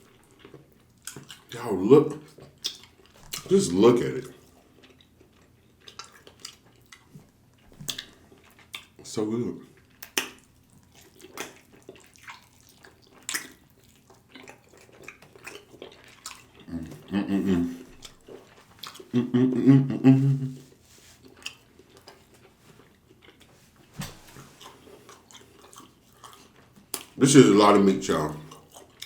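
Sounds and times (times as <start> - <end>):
wet eating and mouth smacking: 0.0 - 19.4, 20.3 - 27.2, 28.4 - 29.0.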